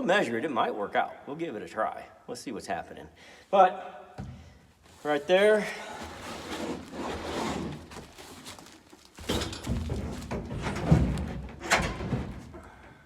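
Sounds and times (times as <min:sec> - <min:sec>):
wood knocking and thudding: 0:09.2 - 0:12.8.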